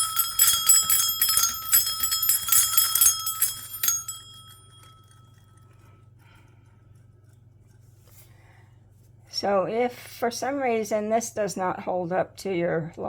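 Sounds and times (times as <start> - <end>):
metal parts clinking: 0.0 - 5.2
metal bell ringing: 0.0 - 5.6.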